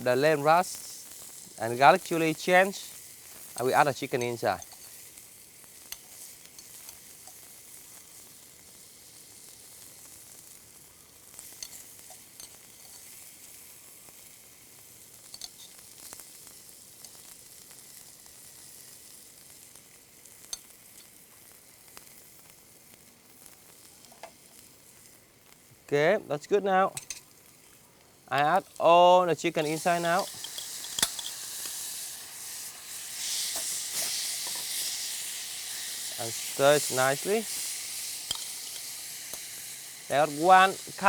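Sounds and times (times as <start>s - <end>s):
food sizzling in oil: 0.0s - 41.0s
utensil clicking against pan: 29.6s - 31.4s.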